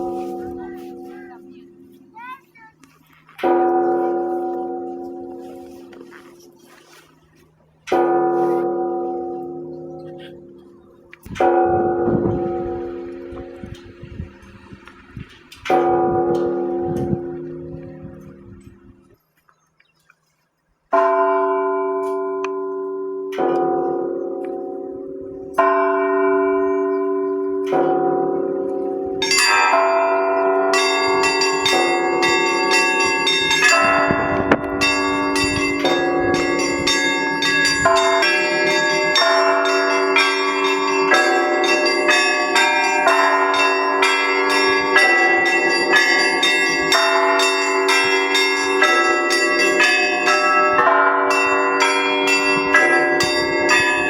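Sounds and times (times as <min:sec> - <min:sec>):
large church bells ringing: 0:00.0 - 0:19.2, 0:20.9 - 0:54.0
small bells pealing rapidly: 0:29.2 - 0:54.0.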